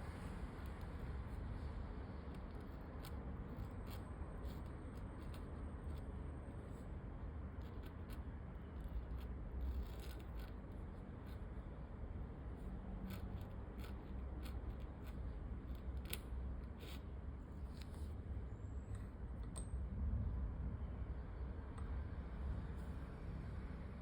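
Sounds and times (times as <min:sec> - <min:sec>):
low steady background rumble: 0:00.0 - 0:24.0
pen nib scratching paper: 0:00.1 - 0:18.1.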